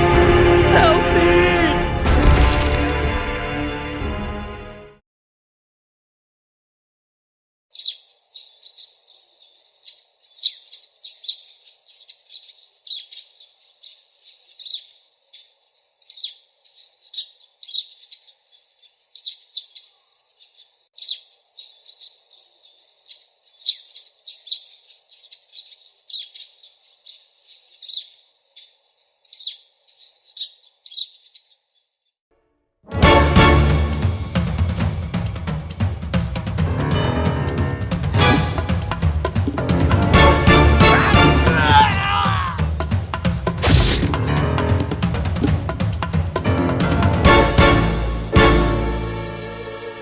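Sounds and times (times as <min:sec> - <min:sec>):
birds chirping: 0:07.7 - 0:32.2, 0:38.2 - 0:46.6.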